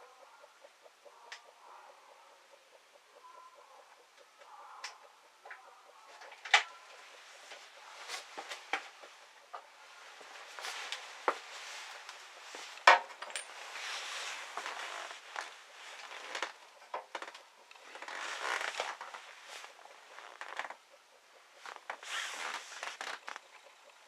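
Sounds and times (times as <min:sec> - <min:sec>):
handling clicks and knocks: 0:10.6 - 0:13.8.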